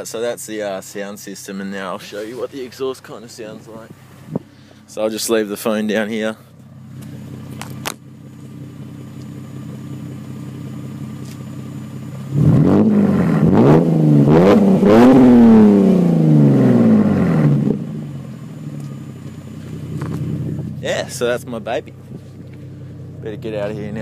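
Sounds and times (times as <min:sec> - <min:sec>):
car engine idling and revving: 0:00.0 - 0:24.0.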